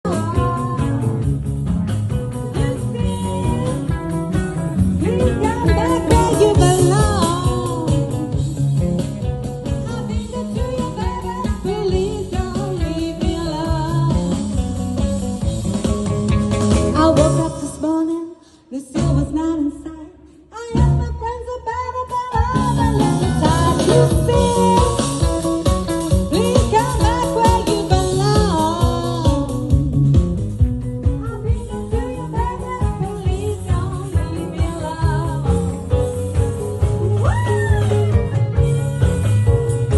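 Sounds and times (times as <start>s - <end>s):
live blues-rock band: 0.0s - 19.4s, 20.7s - 39.9s
lead vocal singing: 22.1s - 25.5s.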